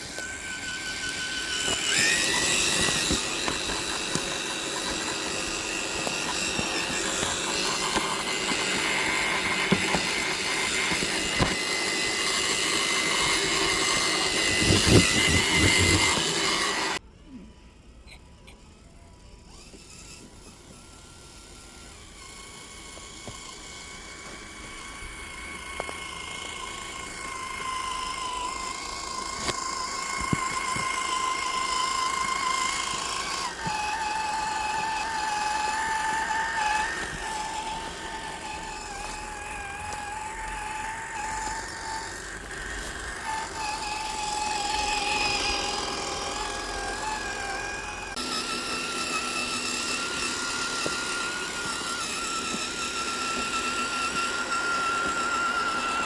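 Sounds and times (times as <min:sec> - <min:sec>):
rc car motor whine: 0:00.0 - 0:56.0.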